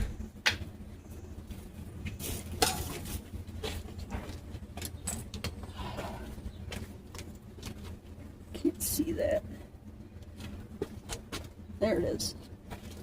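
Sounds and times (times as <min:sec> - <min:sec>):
low steady rumble: 0:00.0 - 0:13.0
objects clicking and rattling: 0:04.0 - 0:05.7.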